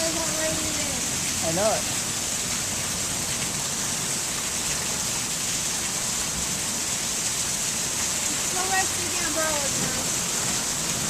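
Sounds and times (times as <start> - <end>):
heavy rain pouring: 0.0 - 11.0.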